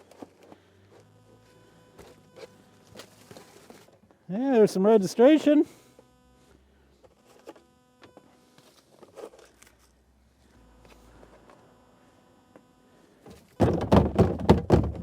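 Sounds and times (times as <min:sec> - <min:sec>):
knocking and rustling: 0:13.5 - 0:15.0.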